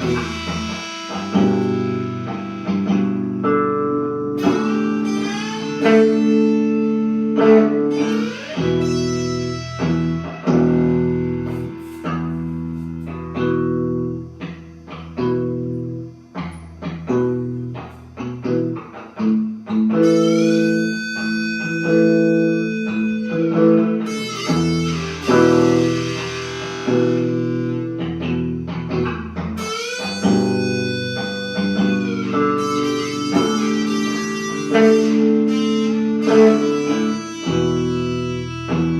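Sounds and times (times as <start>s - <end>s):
bass line: 0.0s - 14.6s
blues guitar: 0.0s - 38.9s.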